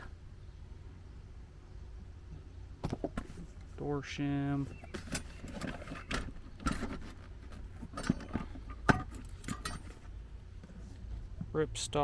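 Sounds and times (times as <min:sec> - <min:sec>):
metal tools clicking and clinking: 0:07.9 - 0:10.0.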